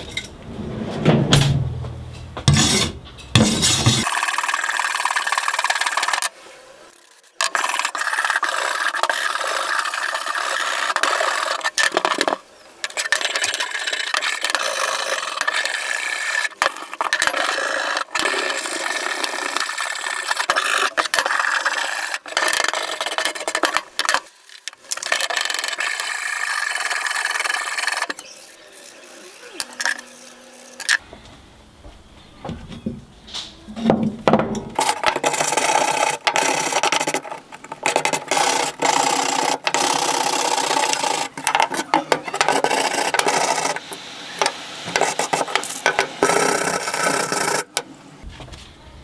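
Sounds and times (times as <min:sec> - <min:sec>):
abrasive scraping metal: 0:00.0 - 0:04.1.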